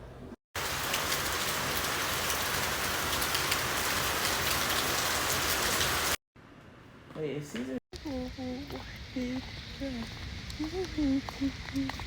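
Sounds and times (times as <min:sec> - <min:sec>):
rain falling steadily: 0:00.6 - 0:06.2.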